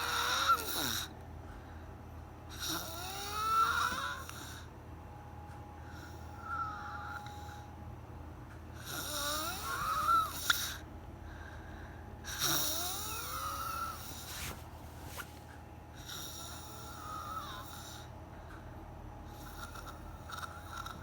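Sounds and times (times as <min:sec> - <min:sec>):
loud wheezy snoring: 0:00.0 - 0:01.1, 0:02.5 - 0:04.7, 0:08.8 - 0:10.8, 0:12.3 - 0:14.6, 0:16.0 - 0:18.1, 0:19.3 - 0:21.0.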